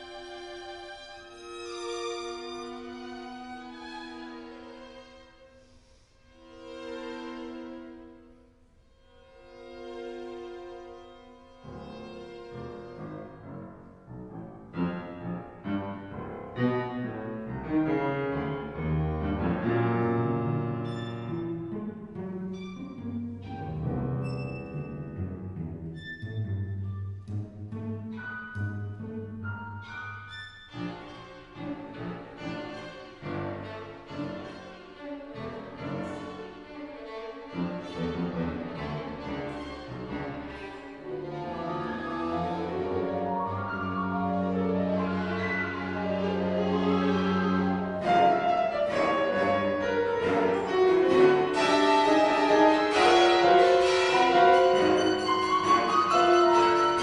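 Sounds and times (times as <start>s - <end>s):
piano notes and chords: 13.0s - 31.1s, 41.2s - 57.0s
sustained bowed strings: 14.8s - 57.0s.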